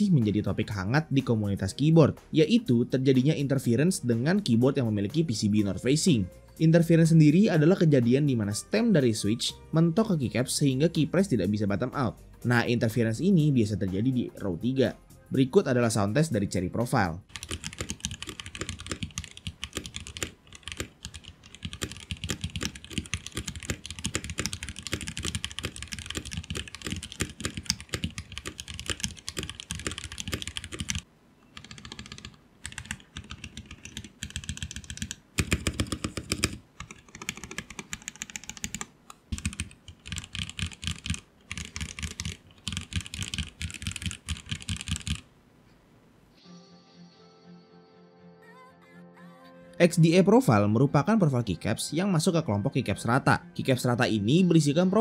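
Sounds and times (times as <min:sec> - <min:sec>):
mechanical keyboard typing: 0:17.3 - 0:31.0, 0:31.6 - 0:45.2.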